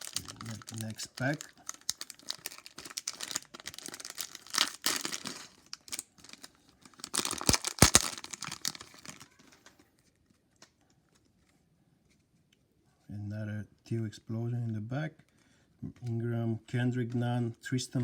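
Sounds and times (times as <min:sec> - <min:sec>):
plastic wrapper crinkling and tearing: 0:00.0 - 0:11.5.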